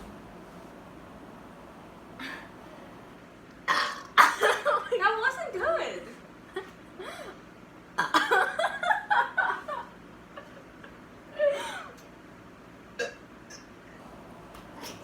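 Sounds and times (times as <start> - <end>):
laughter and giggling: 8.0 - 11.9.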